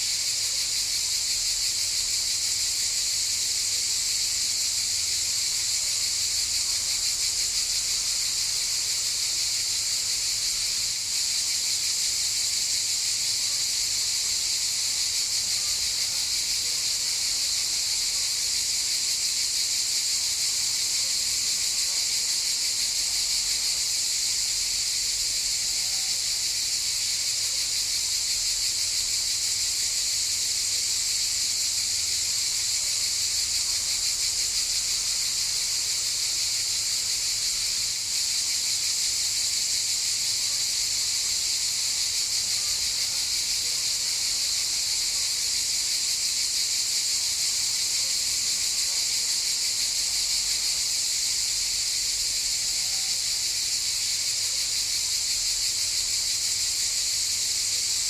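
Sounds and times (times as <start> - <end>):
cicadas buzzing: 0.0 - 58.0.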